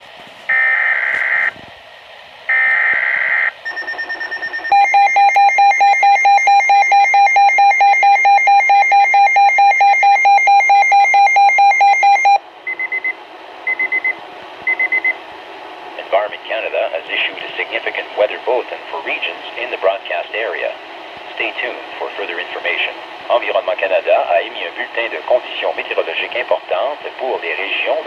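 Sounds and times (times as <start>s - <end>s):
pulsing alarm tone: 2.5s - 13.0s.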